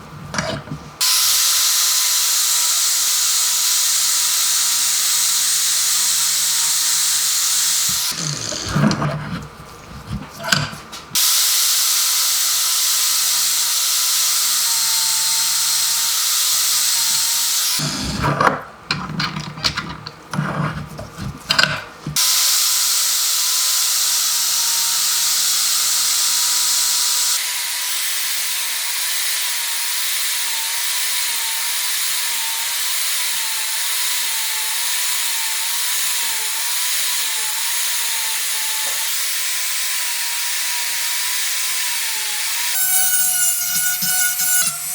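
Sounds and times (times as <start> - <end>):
power tool hissing: 1.0 - 8.9, 11.2 - 18.2, 22.2 - 27.6.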